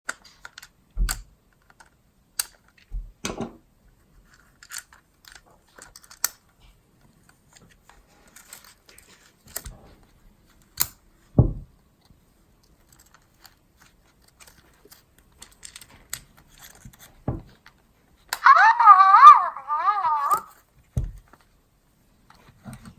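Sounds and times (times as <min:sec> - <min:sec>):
plastic toy being handled: 0:01.5 - 0:02.9, 0:03.9 - 0:11.0, 0:12.0 - 0:21.6.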